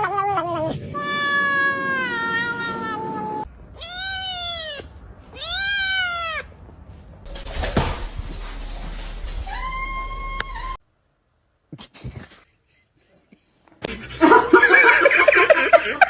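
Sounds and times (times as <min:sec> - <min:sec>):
cat meowing: 0:00.0 - 0:06.6.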